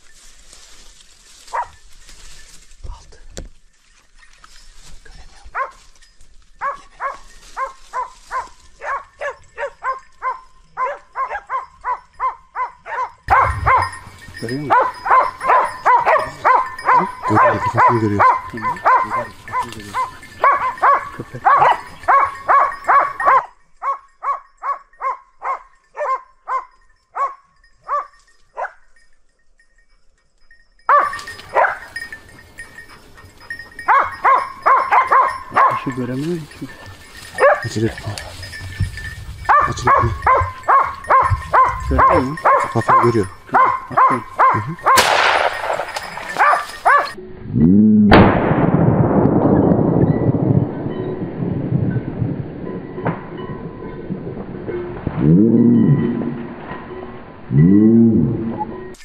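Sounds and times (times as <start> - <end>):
dog barking: 1.5 - 1.8, 5.6 - 5.8, 6.6 - 14.0, 14.7 - 28.8, 30.9 - 32.0, 33.8 - 35.9, 37.4 - 38.2, 39.4 - 45.2, 45.8 - 47.2.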